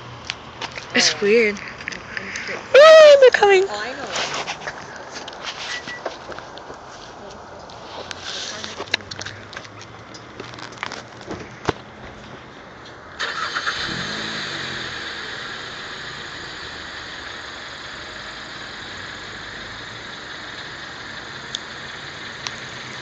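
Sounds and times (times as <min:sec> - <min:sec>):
car engine starting and idling: 0:08.5 - 0:23.0.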